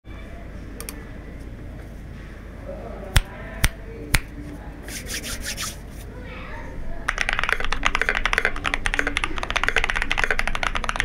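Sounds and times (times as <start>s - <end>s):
mechanical keyboard keystrokes: 7.1s - 11.0s.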